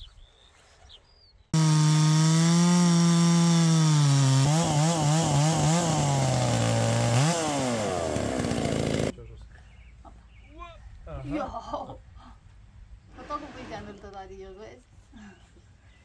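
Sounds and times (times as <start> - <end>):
chainsaw ripping a log: 1.6 - 9.1.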